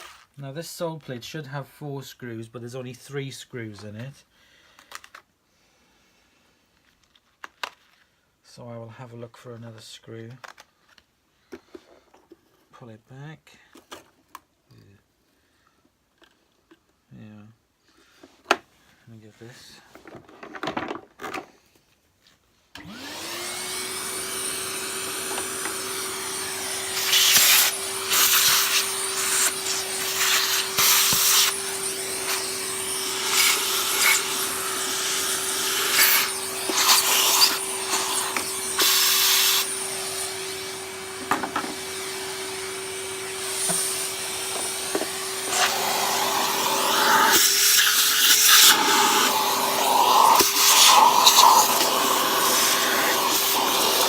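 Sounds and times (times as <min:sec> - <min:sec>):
vacuum cleaner running: 0:22.8 - 0:54.0.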